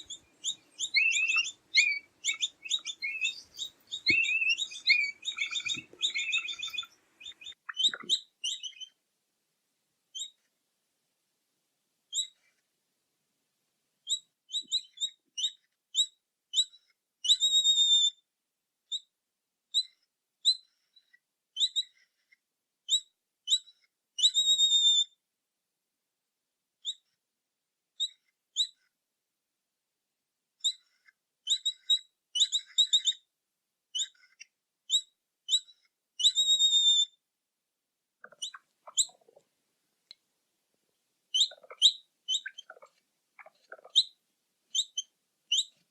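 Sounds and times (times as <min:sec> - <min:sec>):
capybara chirping: 0:00.0 - 0:09.0, 0:31.5 - 0:33.3, 0:34.0 - 0:37.1, 0:38.2 - 0:39.4, 0:41.3 - 0:45.9.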